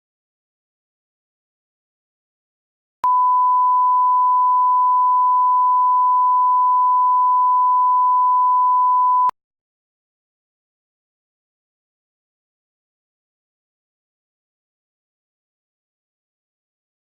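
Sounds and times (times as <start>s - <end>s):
pure test tone beep: 3.0s - 9.3s.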